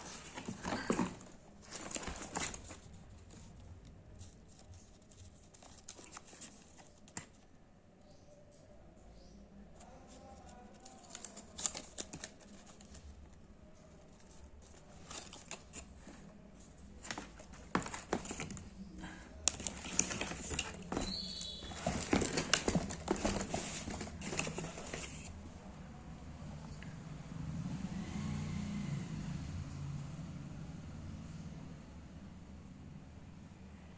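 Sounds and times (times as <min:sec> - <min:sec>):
packaging crinkling: 0:19.5 - 0:25.3.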